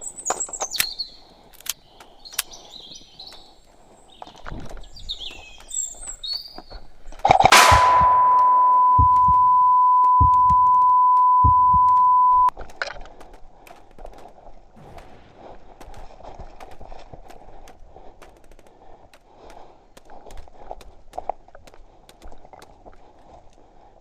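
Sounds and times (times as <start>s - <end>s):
sharp clicks: 7.2s - 14.3s
electronic beep tone: 7.3s - 12.5s
low thumps: 7.3s - 12.5s.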